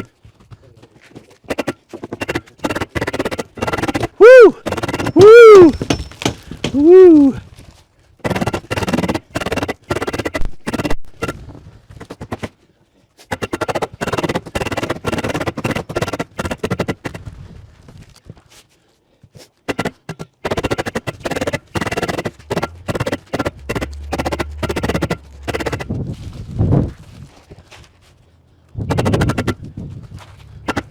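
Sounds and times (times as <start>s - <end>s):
fast percussive drum beat: 1.5s - 7.0s, 8.3s - 11.4s, 12.0s - 12.5s, 13.3s - 17.2s, 19.7s - 25.9s, 28.9s - 29.6s.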